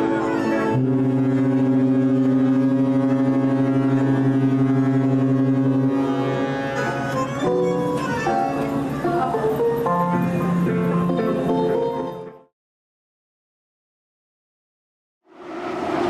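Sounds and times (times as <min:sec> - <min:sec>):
ship's horn blast: 0:00.0 - 0:09.6.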